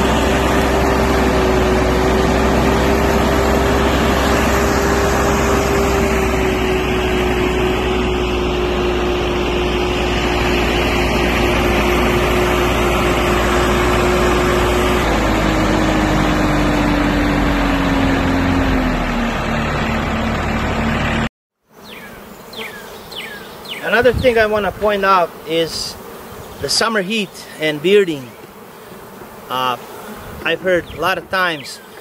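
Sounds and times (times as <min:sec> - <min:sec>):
motor humming: 0:00.0 - 0:21.1.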